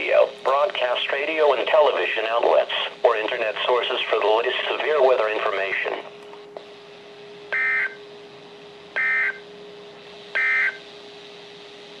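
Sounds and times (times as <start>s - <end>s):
digital data tone bursts: 10.4s - 10.8s.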